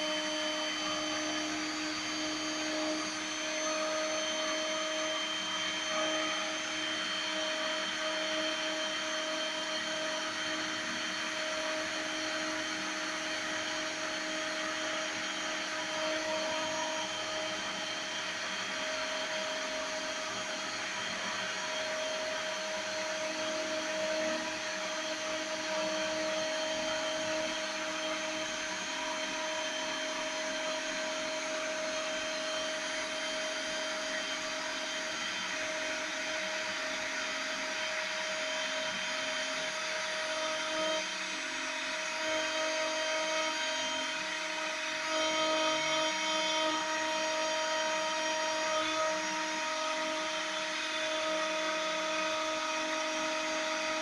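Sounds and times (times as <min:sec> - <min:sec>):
router spindle whine: 0:00.0 - 0:54.0.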